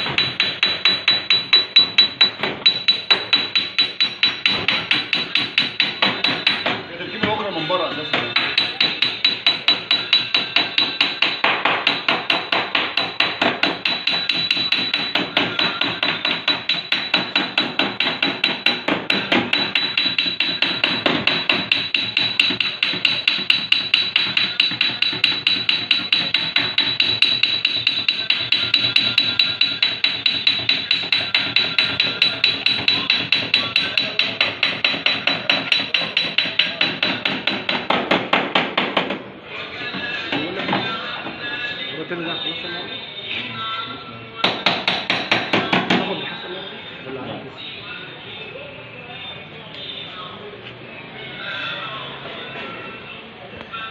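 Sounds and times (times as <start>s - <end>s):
hammer tapping on steel panel: 0.0s - 6.8s, 8.1s - 39.2s, 44.4s - 46.1s.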